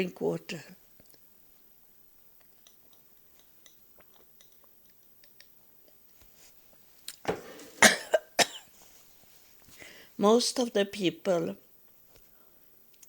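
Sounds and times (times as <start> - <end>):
person breathing: 9.7 - 10.2, 12.2 - 12.7.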